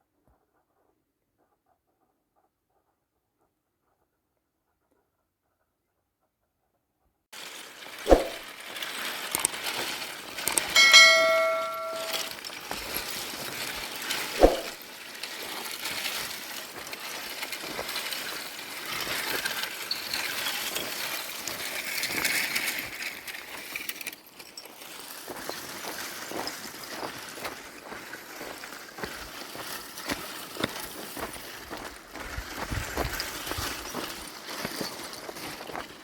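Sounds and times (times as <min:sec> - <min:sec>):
metallic bell-like ring: 0:10.7 - 0:12.3.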